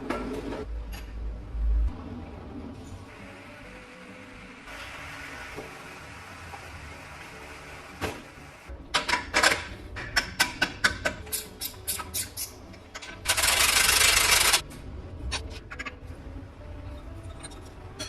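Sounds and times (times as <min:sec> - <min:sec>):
metal tools clicking and knocking: 0:08.9 - 0:13.4.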